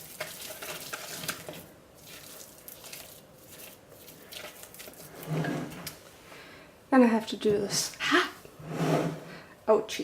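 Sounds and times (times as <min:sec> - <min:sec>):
spatula scraping soap paste: 0:00.0 - 0:05.9.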